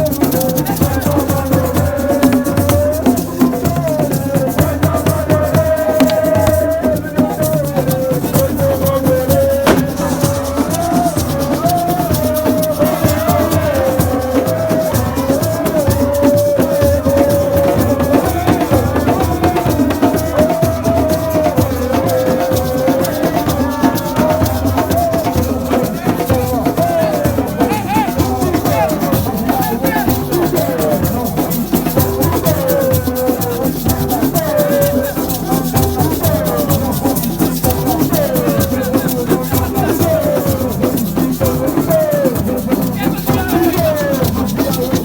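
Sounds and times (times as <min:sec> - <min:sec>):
shaken rattle rhythm: 0:00.0 - 0:45.0
low drumming: 0:04.6 - 0:14.6.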